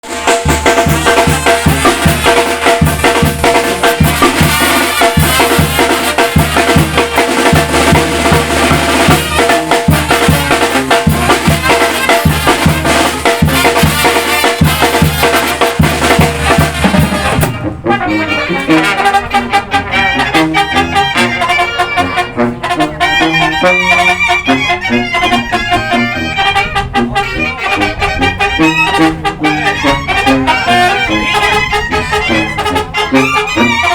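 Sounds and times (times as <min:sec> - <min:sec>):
snare drum: 0:00.0 - 0:17.7
brass band playing: 0:00.0 - 0:33.9.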